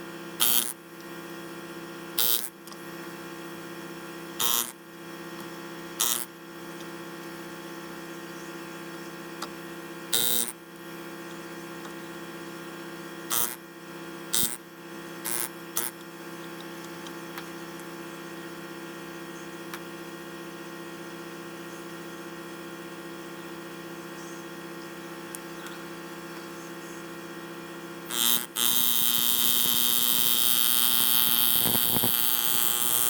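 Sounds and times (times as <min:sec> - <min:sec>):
small electric motor humming: 0:00.0 - 0:18.6, 0:25.0 - 0:33.0.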